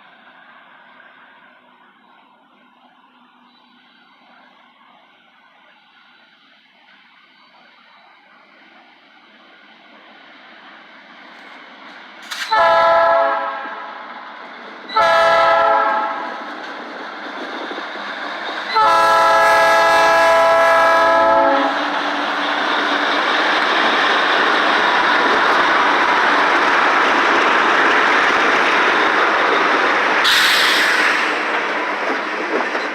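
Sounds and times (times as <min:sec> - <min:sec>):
train rolling on rails: 0:00.0 - 0:32.9
locomotive air horn blasts: 0:12.4 - 0:14.0, 0:14.9 - 0:16.3, 0:18.7 - 0:22.3.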